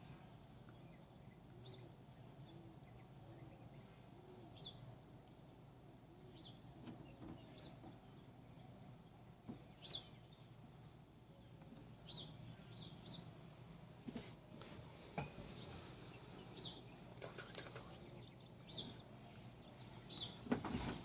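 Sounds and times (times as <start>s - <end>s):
low background hum: 0.0s - 21.0s.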